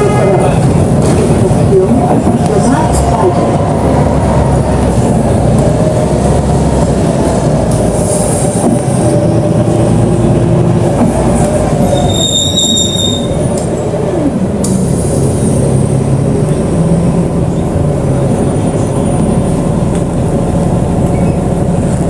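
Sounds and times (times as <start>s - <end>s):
bus drivetrain rumble: 0.0s - 22.0s
high squeal: 11.8s - 13.5s.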